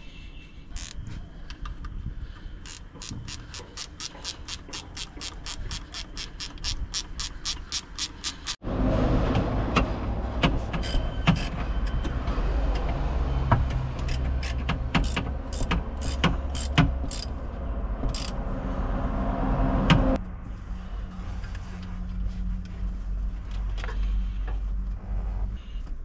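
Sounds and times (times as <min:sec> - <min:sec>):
sharp clicks and knocks: 0:09.4 - 0:17.3.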